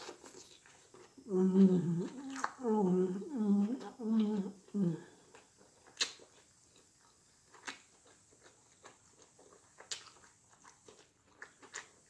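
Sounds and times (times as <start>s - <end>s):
person chewing: 0.0s - 2.7s, 3.9s - 12.0s.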